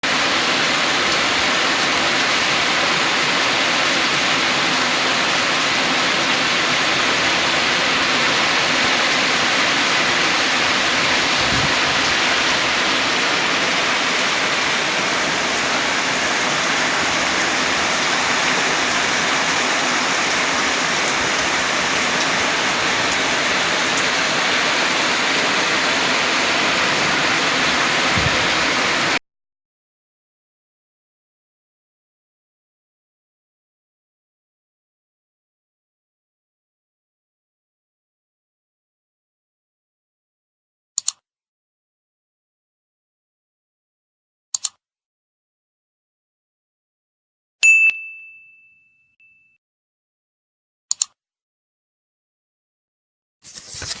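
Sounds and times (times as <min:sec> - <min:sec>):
heavy rain: 0:00.0 - 0:29.2
swollen river water rushing: 0:00.0 - 0:29.2.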